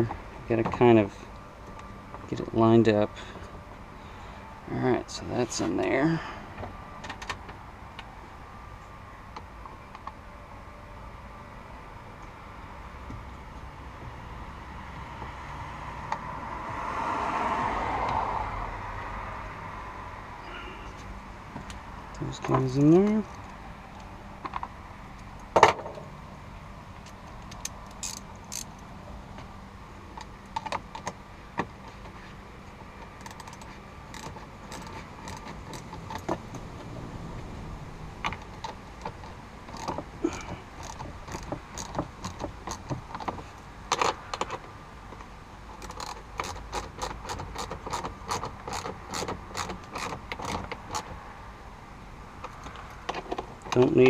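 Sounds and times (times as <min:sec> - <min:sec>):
hand tool clicking on screws: 0:33.2 - 0:36.3, 0:39.0 - 0:43.3, 0:45.8 - 0:51.1.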